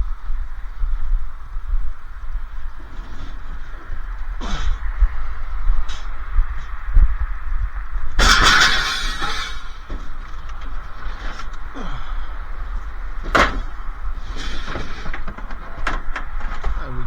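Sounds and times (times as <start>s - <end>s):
sharp bang: 8.2s - 10.2s
scrap metal scraping and clattering: 8.2s - 11.9s, 12.7s - 17.0s.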